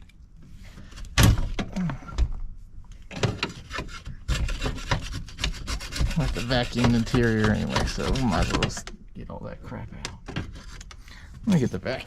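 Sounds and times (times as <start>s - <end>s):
hands scraping inside a dashboard: 3.2s - 8.9s, 10.4s - 11.0s.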